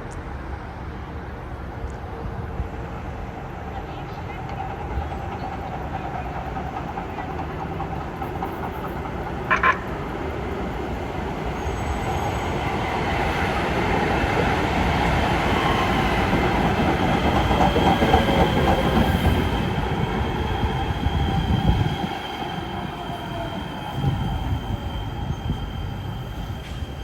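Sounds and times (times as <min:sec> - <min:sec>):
train rumble: 0:00.0 - 0:27.0
train wheels squealing: 0:10.0 - 0:27.0.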